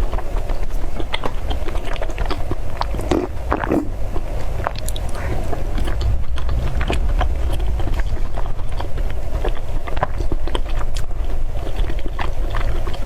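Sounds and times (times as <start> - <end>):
wet chewing mouth sounds: 0.0 - 13.0
low rumble: 2.7 - 12.8.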